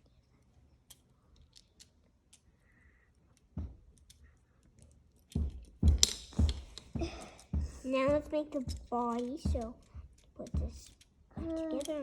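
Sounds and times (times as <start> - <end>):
plastic bricks clicking: 0.8 - 2.5, 8.7 - 12.0.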